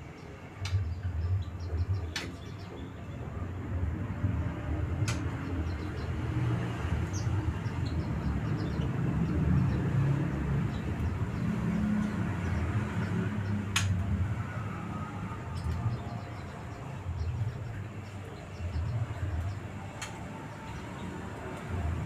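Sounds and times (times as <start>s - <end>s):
passing motor vehicle rumble: 0.0s - 22.0s
sharp clicks: 13.6s - 14.1s.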